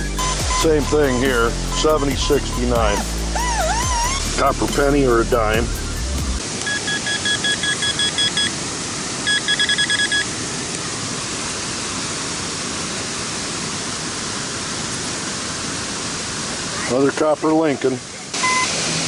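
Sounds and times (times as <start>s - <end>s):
metal detector beeping: 0.0s - 5.0s, 6.6s - 8.6s, 9.2s - 10.3s, 18.4s - 18.7s
waterfall rushing: 0.0s - 19.0s.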